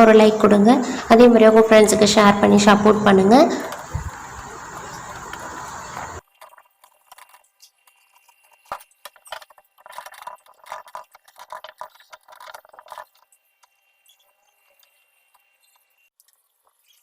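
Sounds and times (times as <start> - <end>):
steady hiss: 1.9 - 6.2.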